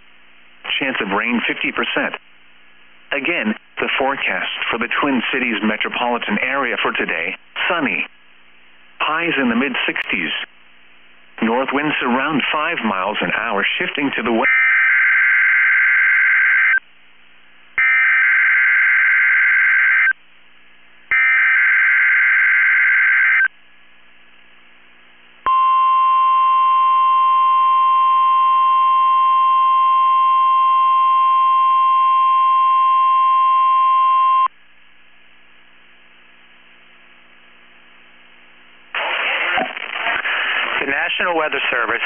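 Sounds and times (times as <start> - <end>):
steady warning alarm tone: 14.5 - 16.8, 17.8 - 20.2, 21.1 - 23.5, 25.5 - 34.5.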